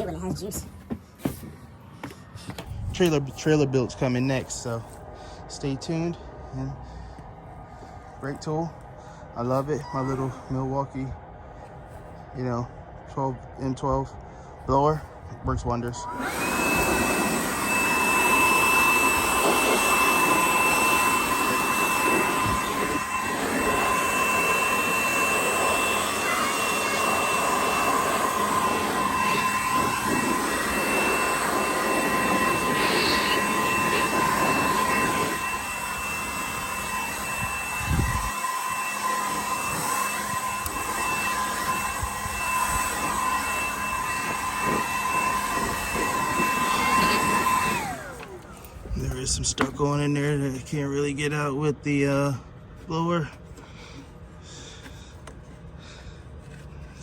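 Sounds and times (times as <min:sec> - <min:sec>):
cordless blower whining: 0:15.6 - 0:52.0.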